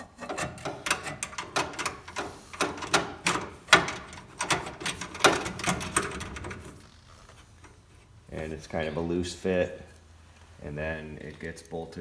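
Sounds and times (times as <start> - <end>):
metallic clicks and scrapes: 0.0 - 7.8.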